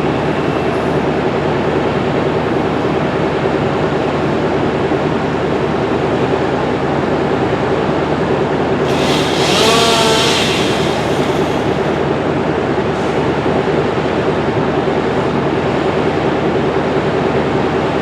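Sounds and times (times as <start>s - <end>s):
wood chipper engine running: 8.8s - 13.1s
high-pitched wavering whine: 8.9s - 12.2s.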